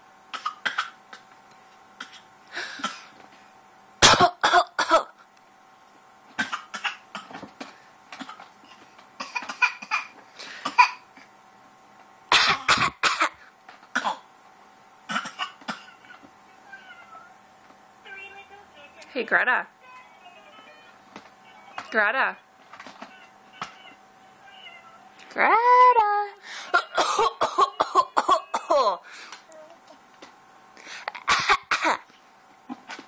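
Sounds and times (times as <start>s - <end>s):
faint steady hum: 0.0s - 33.0s
baby coughing: 0.3s - 1.2s, 2.0s - 3.1s, 4.0s - 5.2s, 6.4s - 7.4s, 8.2s - 8.4s, 9.2s - 11.1s, 12.3s - 14.3s, 15.1s - 16.2s, 26.7s - 29.0s, 31.2s - 32.1s.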